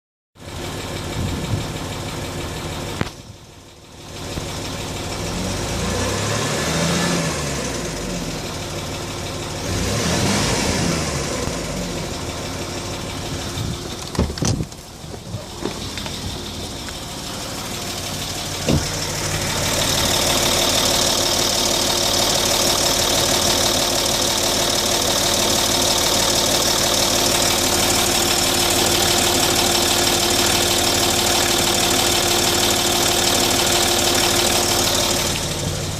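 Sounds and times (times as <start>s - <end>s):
diesel engine revving: 4.0s - 35.9s
engine ticking noise: 11.2s - 35.9s.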